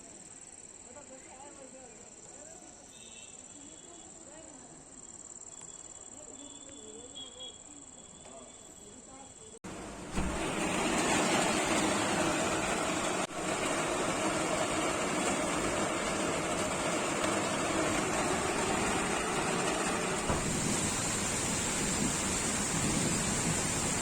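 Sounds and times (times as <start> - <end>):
steady rain falling: 9.7 - 24.0.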